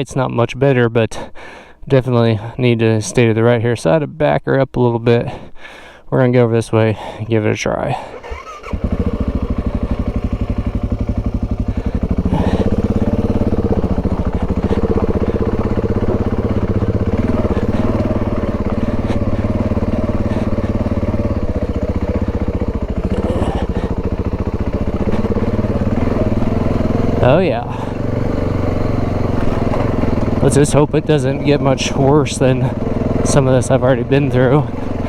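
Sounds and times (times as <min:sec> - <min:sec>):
motorcycle engine running slowly: 0:08.2 - 0:35.0.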